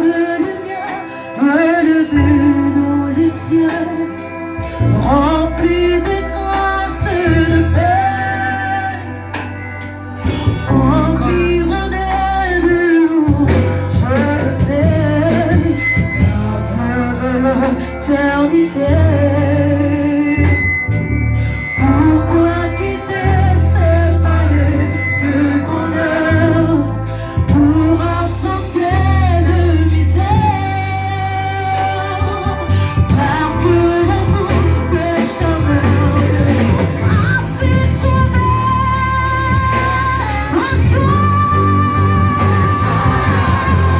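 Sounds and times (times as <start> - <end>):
band playing: 0.0 - 43.9
worship singing: 0.0 - 43.9.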